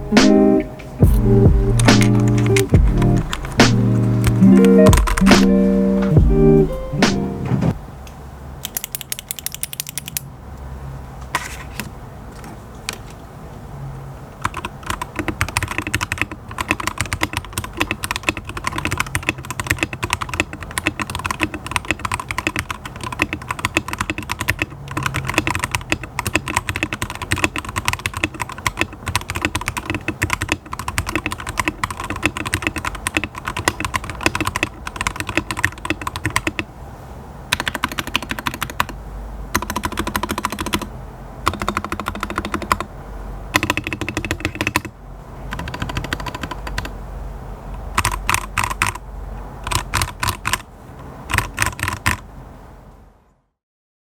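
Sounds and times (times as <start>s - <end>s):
mechanical keyboard typing: 1.1s - 6.8s, 8.6s - 10.3s, 14.4s - 36.7s, 37.5s - 42.9s, 43.5s - 47.0s, 47.8s - 49.0s, 49.6s - 52.2s.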